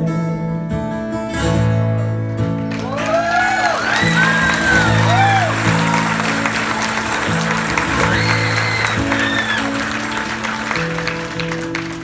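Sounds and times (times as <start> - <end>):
audience applauding: 2.6 - 12.0.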